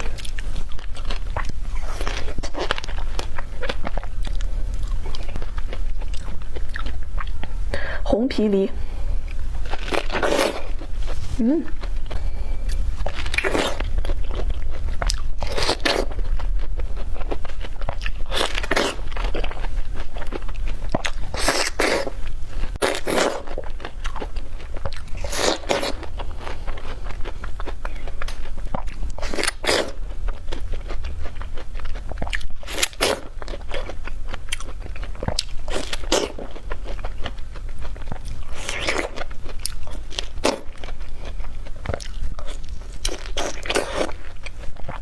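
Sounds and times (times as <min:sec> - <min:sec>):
chewing: 0:00.0 - 0:07.6, 0:09.2 - 0:45.0.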